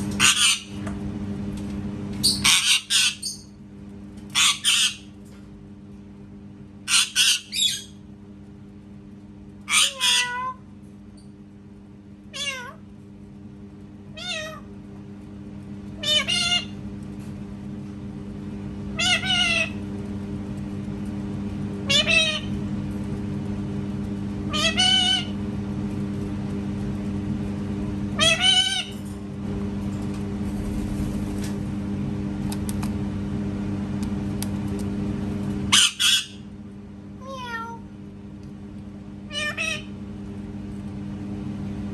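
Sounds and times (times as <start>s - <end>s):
parrot meowing: 9.7s - 10.6s, 12.3s - 12.8s.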